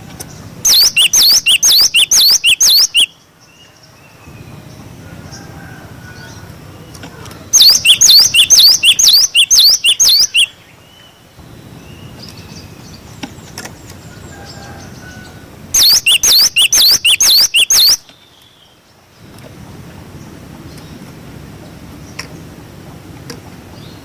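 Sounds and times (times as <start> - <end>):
faint background noise: 0.0 - 24.0
bird singing whistled notes: 0.7 - 4.6, 7.5 - 11.2, 15.8 - 18.8.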